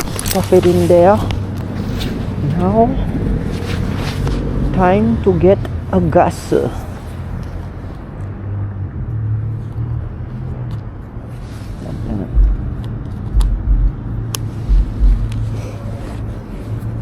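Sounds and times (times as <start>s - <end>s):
deep thumps: 12.3s - 15.6s
motorcycle engine running: 12.4s - 15.6s.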